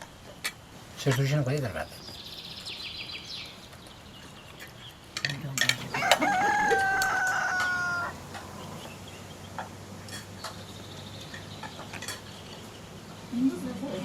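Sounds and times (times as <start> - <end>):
rooster crowing: 5.8 - 8.8.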